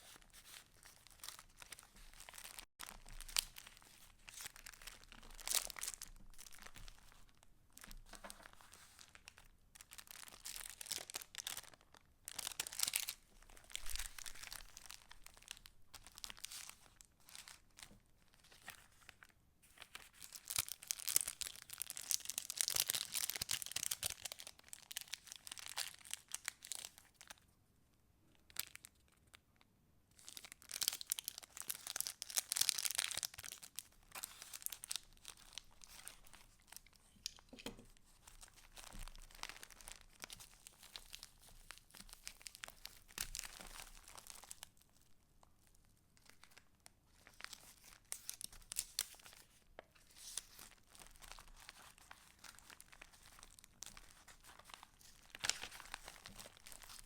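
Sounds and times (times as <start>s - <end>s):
paper rustling and crinkling: 0.0s - 11.2s, 46.2s - 57.0s.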